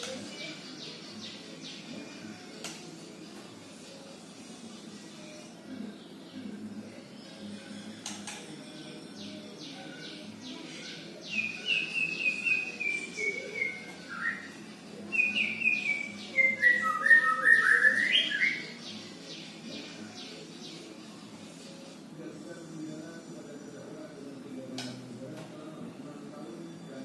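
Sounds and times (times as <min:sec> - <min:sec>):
bird chirping song: 0:00.0 - 0:04.1, 0:07.2 - 0:21.6.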